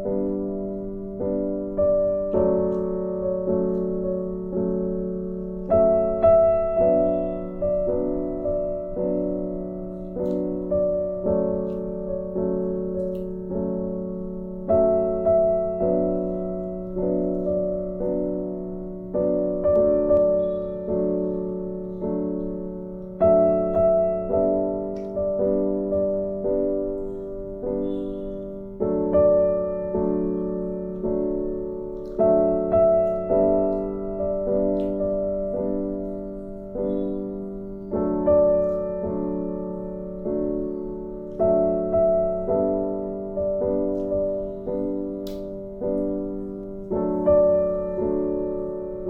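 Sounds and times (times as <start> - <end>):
slow piano music: 0.0 - 49.0.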